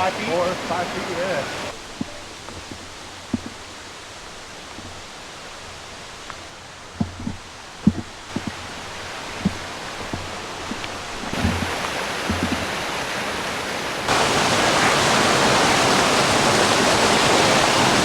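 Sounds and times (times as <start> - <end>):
river water rushing over rocks: 0.0 - 18.0
soft low thumps: 1.9 - 3.8, 7.0 - 12.8.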